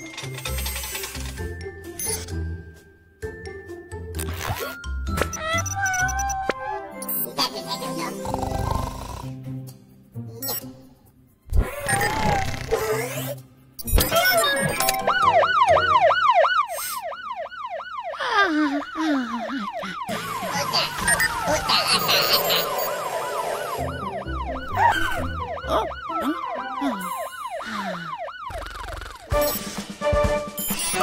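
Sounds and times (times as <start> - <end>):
background music: 0.0 - 16.7, 20.0 - 27.9, 29.2 - 31.0
cartoon siren wailing: 14.0 - 29.3.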